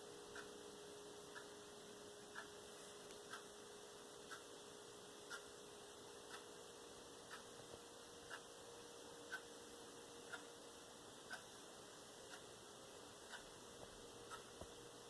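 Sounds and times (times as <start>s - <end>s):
faint steady hum: 0.0s - 15.0s
faint ticking: 0.1s - 15.0s.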